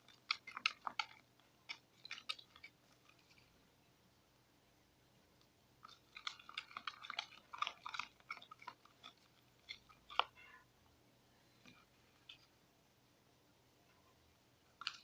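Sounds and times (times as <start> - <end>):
foamy mixture squelching in bowl: 0.0 - 3.6, 5.8 - 10.5.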